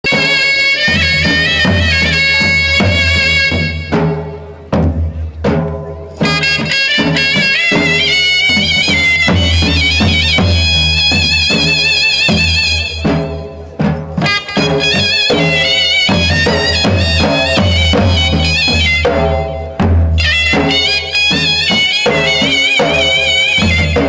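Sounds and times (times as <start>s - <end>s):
drum beats: 0.0s - 24.0s
reedy wind melody: 6.2s - 24.0s.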